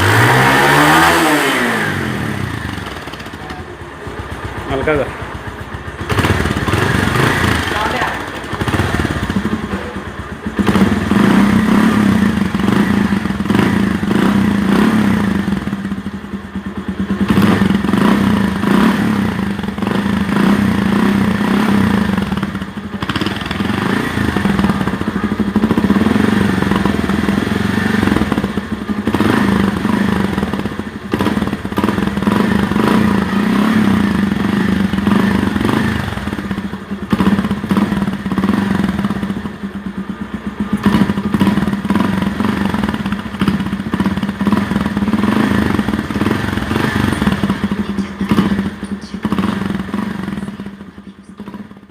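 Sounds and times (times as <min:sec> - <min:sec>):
motorcycle engine revving: 0:00.0 - 0:51.9.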